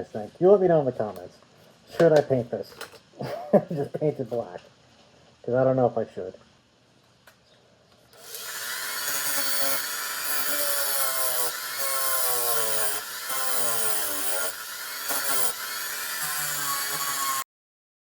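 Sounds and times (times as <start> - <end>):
rotary tool whining and grinding: 8.2 - 17.5.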